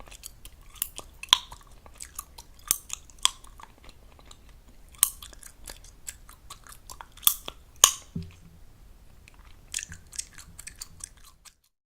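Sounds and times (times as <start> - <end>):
gum chewing smacks: 0.0 - 8.5, 9.2 - 11.8
gum snapping pops: 7.0 - 8.4.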